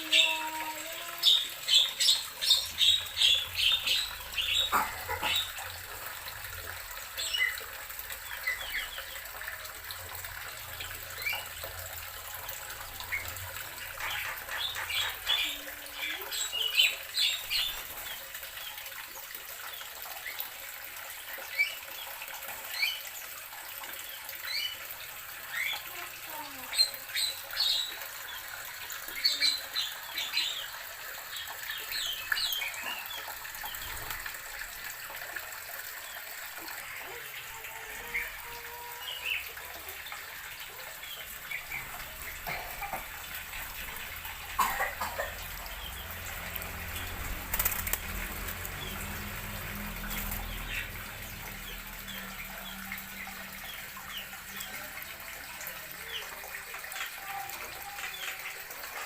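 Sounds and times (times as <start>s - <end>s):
birds chirping: 0.0s - 5.8s.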